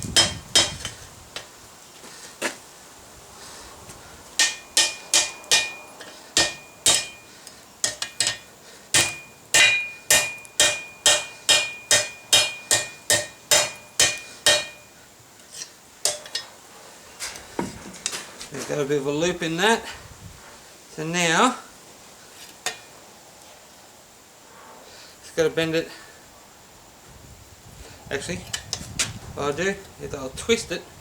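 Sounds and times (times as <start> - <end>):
hammer striking steel on anvil: 0.2 - 0.9, 4.4 - 14.9, 16.0 - 16.4
high ringing of anvil: 0.2 - 0.9, 4.4 - 15.0.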